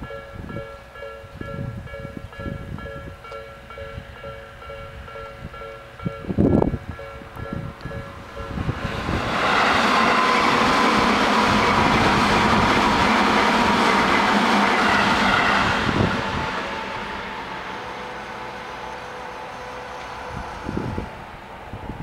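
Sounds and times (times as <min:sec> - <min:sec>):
level crossing warning bell: 0:00.0 - 0:08.8
electric train passing: 0:00.0 - 0:22.0.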